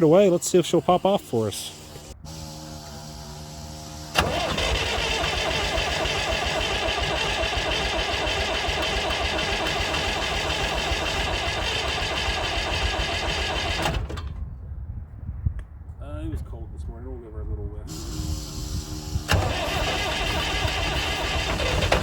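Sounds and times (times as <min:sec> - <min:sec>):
diesel engine cranking: 0:00.0 - 0:14.4, 0:17.9 - 0:22.0
starter motor whine: 0:01.0 - 0:14.2, 0:17.9 - 0:22.0.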